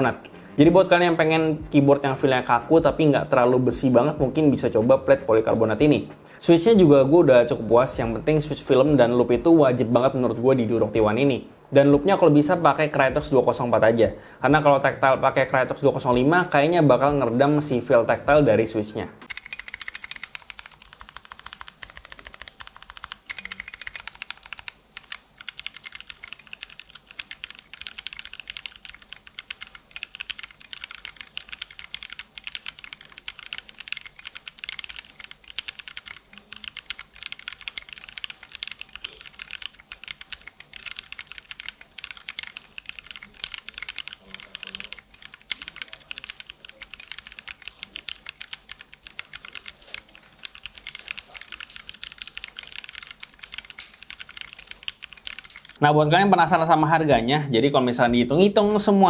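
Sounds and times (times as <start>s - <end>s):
rapid mechanical keyboard typing: 19.3s - 55.8s.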